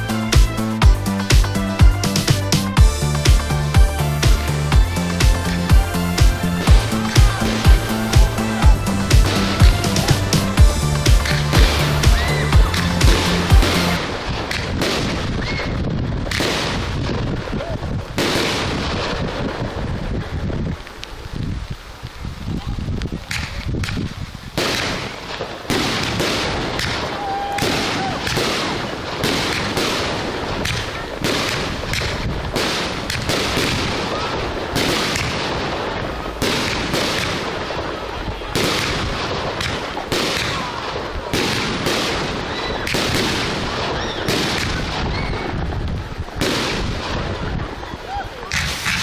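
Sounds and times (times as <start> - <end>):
firework shells bursting: 0.0 - 22.1, 23.0 - 47.6, 48.5 - 49.0
firework crackling: 0.0 - 49.0.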